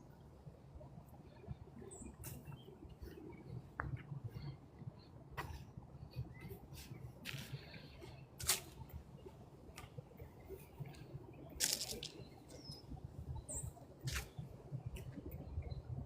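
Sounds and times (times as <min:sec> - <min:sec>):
bird chirp: 0:10.4 - 0:14.5
dry leaves crunching underfoot: 0:11.6 - 0:12.1.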